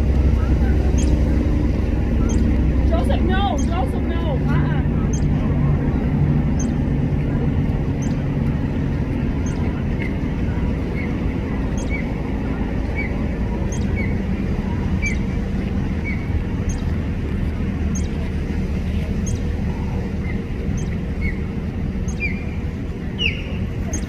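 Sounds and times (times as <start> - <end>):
low rumble: 0.0 - 24.0
songbird chirping: 0.4 - 1.4, 2.0 - 5.5, 6.5 - 6.8, 7.9 - 8.3, 9.3 - 15.3, 16.0 - 17.0, 17.9 - 18.3, 19.2 - 19.5, 20.3 - 22.6, 23.2 - 24.0.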